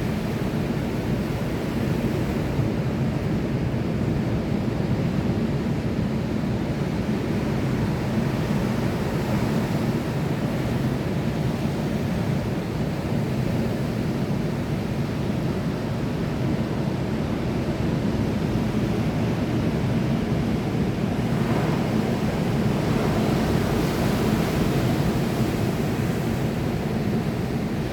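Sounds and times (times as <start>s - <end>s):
sea surf washing: 20.4s - 27.9s.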